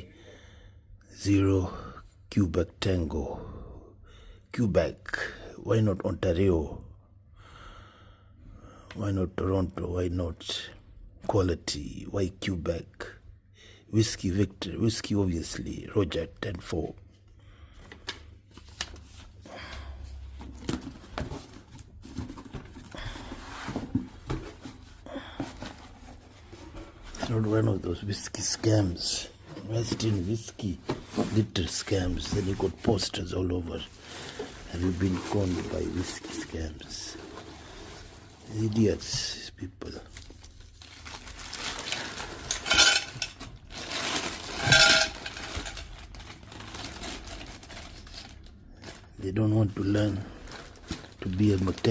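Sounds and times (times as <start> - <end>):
paper and packaging rustling: 17.8 - 51.9
handling rustle: 40.1 - 49.1
metal parts clinking: 42.5 - 43.4, 44.4 - 45.9.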